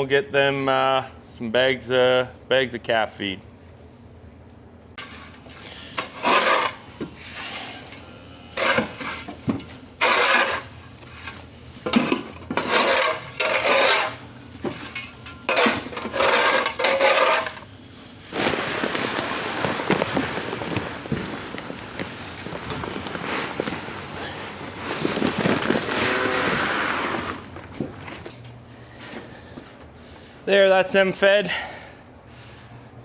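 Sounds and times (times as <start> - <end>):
hay rustling: 16.8 - 27.8
broom sweeping hay: 18.2 - 27.5.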